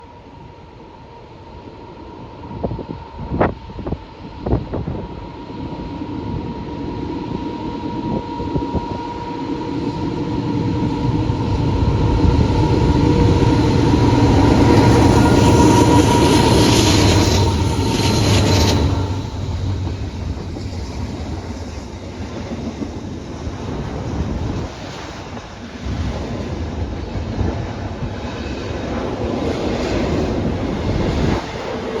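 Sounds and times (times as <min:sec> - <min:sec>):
diesel locomotive engines passing: 0:00.0 - 0:32.0
train cars rumbling: 0:04.1 - 0:32.0
train wheel clatter: 0:12.3 - 0:32.0.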